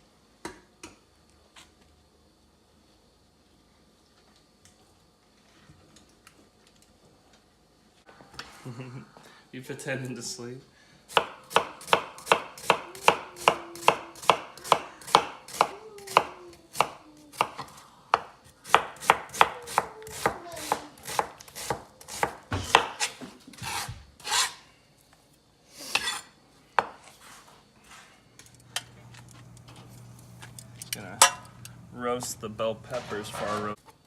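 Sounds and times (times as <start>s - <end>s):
knife chopping on cutting board: 11.1s - 24.6s.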